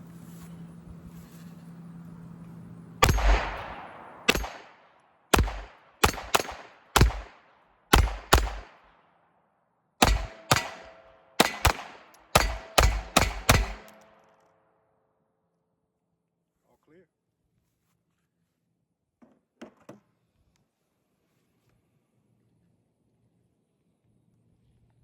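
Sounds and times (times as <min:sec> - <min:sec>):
pistol shots with ringing tail: 0:03.0 - 0:09.0, 0:10.0 - 0:14.2.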